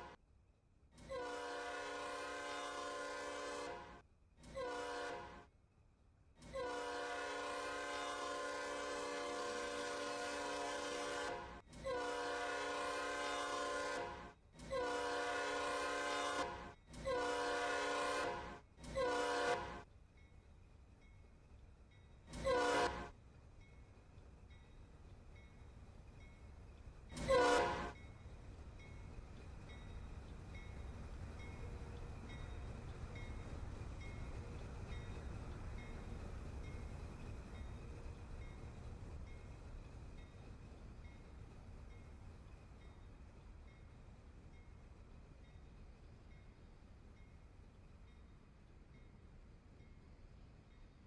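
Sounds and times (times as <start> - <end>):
locomotive air horn blasts: 1.0 - 5.5, 6.4 - 19.8, 22.3 - 23.1, 27.1 - 28.0.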